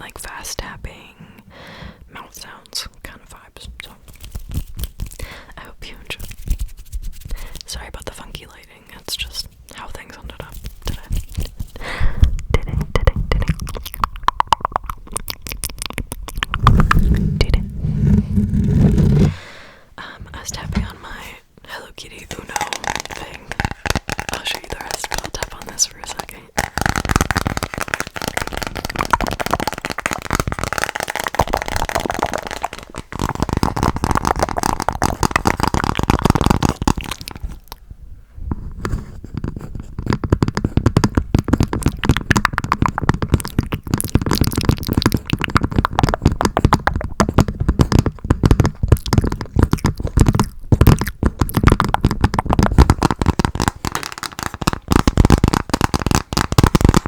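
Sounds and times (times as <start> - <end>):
fast tapping on cardboard box: 22.6 - 25.6, 26.6 - 37.4, 39.4 - 57.0.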